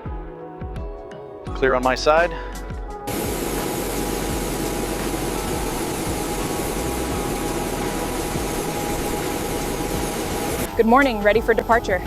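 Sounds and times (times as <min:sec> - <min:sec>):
jet engine running: 0:03.1 - 0:12.0.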